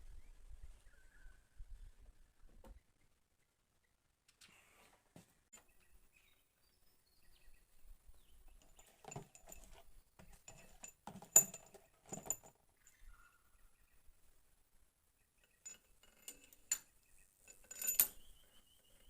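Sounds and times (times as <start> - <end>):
metal tools clinking and knocking: 8.4 - 13.1, 15.4 - 19.0.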